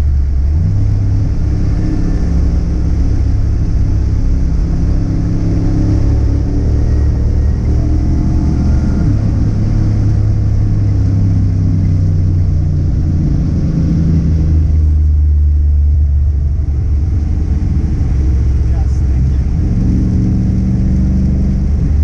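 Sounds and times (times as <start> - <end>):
car engine rumbling: 0.0 - 22.0.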